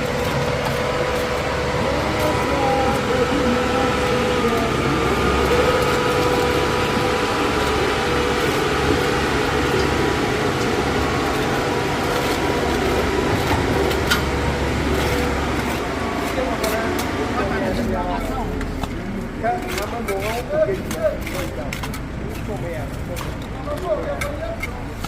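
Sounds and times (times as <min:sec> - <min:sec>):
motor drone with whine: 0:00.0 - 0:16.6.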